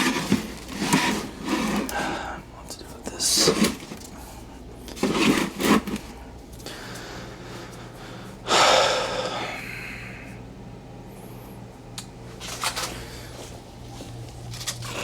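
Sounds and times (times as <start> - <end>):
steady low hum: 0.0 - 15.0
heavy exhale: 6.7 - 10.4.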